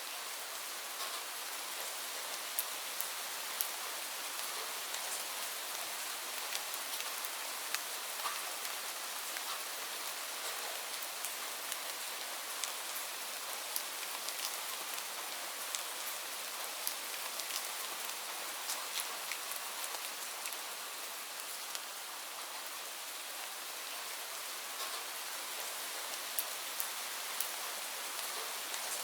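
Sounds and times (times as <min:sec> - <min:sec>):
steady rain hiss: 0:00.0 - 0:29.0.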